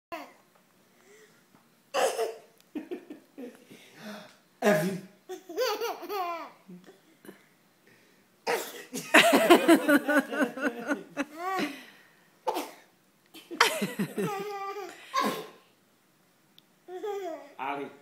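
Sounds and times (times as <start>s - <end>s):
laughter: 2.7s - 3.6s, 9.0s - 11.3s, 13.4s - 14.4s
person imitating sneezes: 15.2s - 15.6s.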